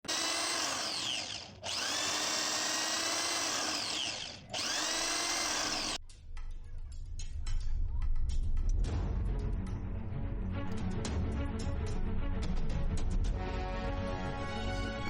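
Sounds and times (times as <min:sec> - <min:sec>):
washing machine motor whirring: 0:00.0 - 0:06.0.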